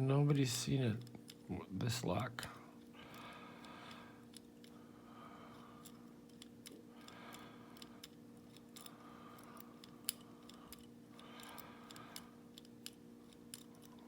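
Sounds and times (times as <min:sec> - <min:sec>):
metallic clicks of lock picking: 0:05.8 - 0:14.0.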